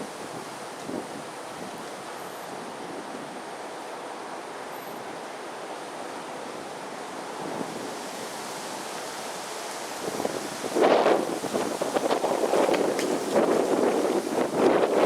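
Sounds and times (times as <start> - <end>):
gusty wind on microphone: 0.0 - 3.5, 7.3 - 15.0.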